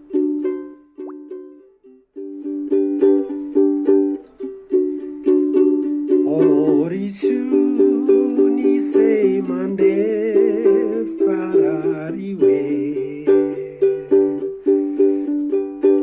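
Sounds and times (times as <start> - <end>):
ukulele strumming chords: 0.0 - 16.0
person singing: 5.0 - 16.0.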